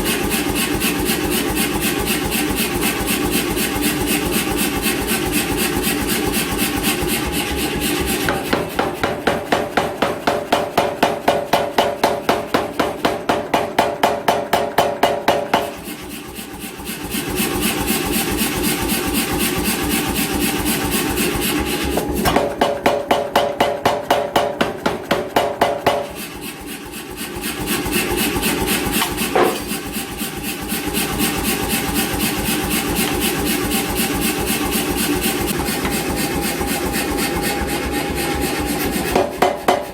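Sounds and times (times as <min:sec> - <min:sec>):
rapid hammer blows on metal: 0:00.0 - 0:39.9
power hammer motor running: 0:27.4 - 0:39.2.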